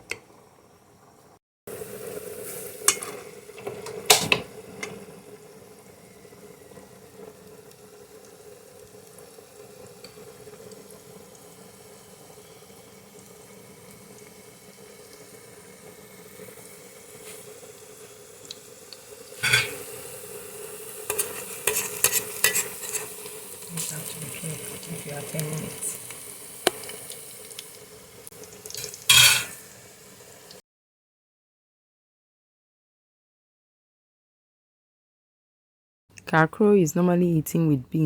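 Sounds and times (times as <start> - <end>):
batter frying in hot oil: 0.1 - 30.6.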